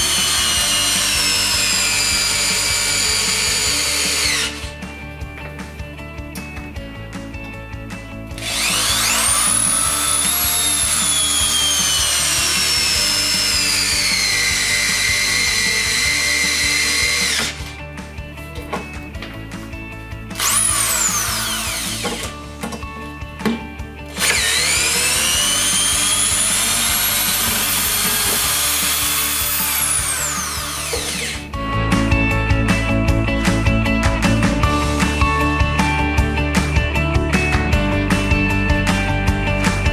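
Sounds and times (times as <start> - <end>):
electric drill running: 0.0 - 4.8, 8.3 - 17.8, 20.4 - 22.4, 24.1 - 31.5
background music: 0.0 - 39.9.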